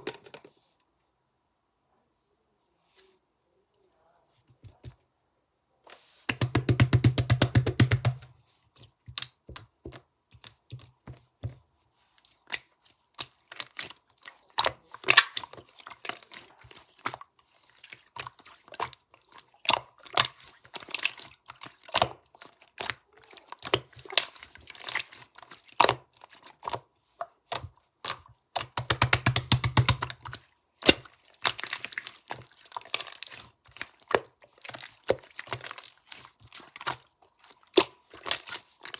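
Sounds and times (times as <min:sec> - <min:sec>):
slime clicking and popping: 0:06.3 - 0:08.3, 0:28.1 - 0:30.2.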